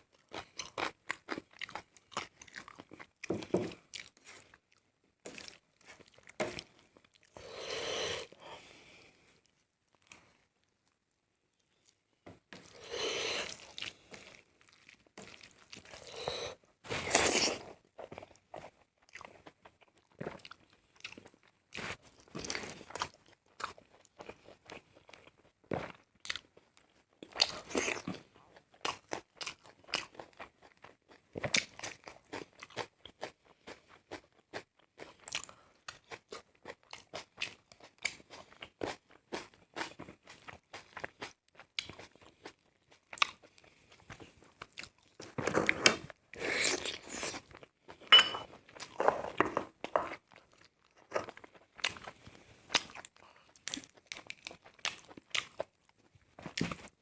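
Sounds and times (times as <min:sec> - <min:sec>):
person chewing and crunching food: 0:00.0 - 0:57.0.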